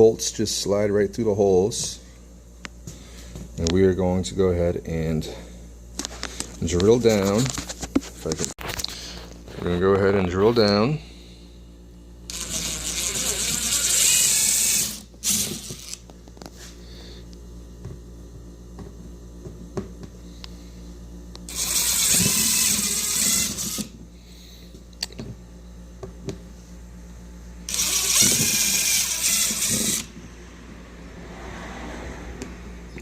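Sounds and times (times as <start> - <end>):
power drill drilling through plastic: 12.3 - 16.0, 21.5 - 23.9, 27.7 - 30.1.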